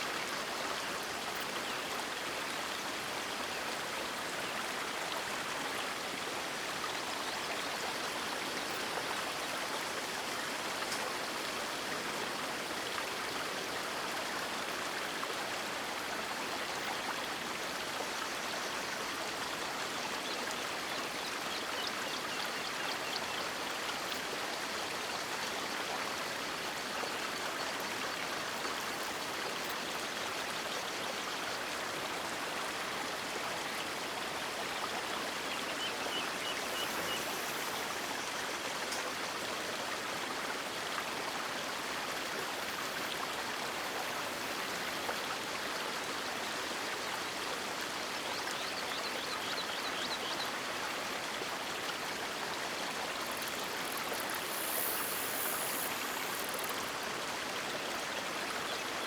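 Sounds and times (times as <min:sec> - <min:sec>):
river water rushing: 0:35.4 - 0:39.3.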